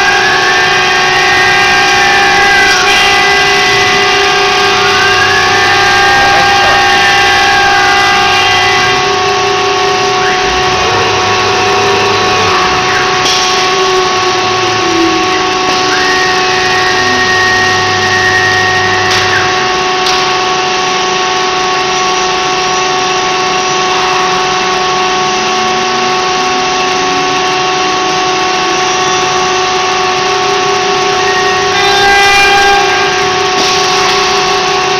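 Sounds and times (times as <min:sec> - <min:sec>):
axis drive motors: 0:00.0 - 0:20.3
cnc spindle high whine: 0:00.0 - 0:34.9.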